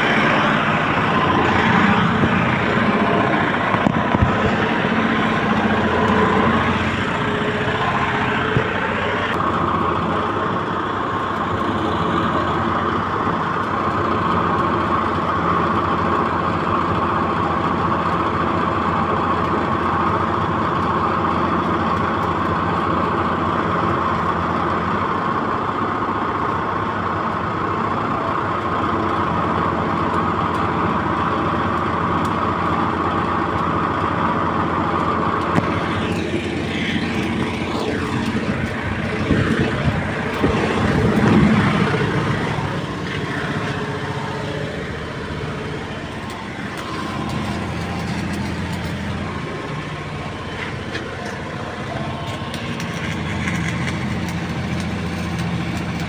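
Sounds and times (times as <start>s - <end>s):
engine running: 0.0s - 56.0s.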